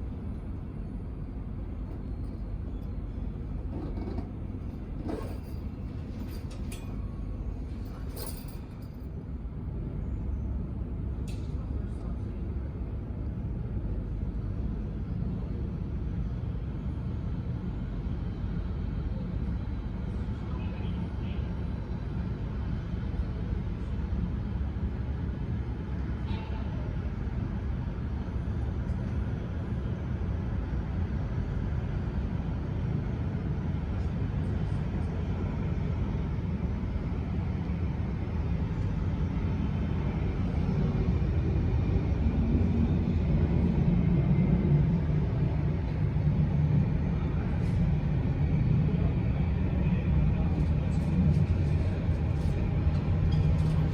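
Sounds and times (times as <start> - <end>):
jet engines rumbling: 26.8 - 53.9.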